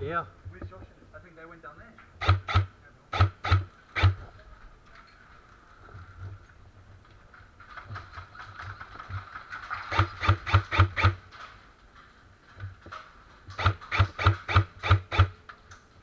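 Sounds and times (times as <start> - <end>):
airsoft rifle shots: 2.2 - 4.3, 9.8 - 11.3, 13.5 - 15.4.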